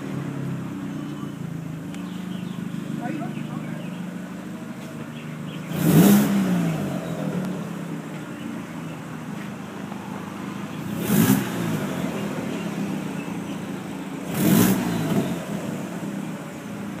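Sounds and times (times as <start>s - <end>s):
car engine hum: 0.0s - 17.0s.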